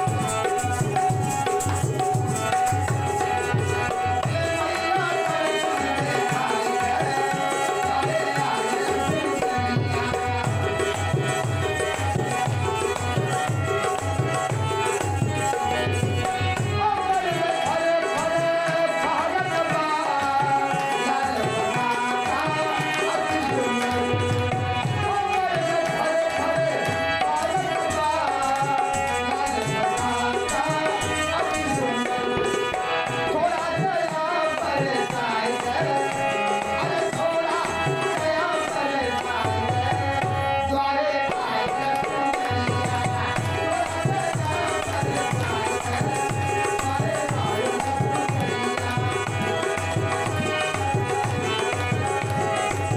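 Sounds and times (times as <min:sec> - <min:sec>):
devotional melody: 0:00.0 - 0:52.9
tabla drumming: 0:00.0 - 0:52.9.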